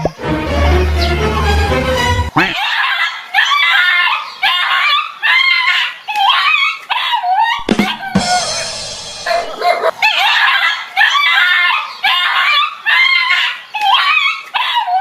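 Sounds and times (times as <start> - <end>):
dog barking and yelping: 2.4 - 8.4, 9.2 - 15.0.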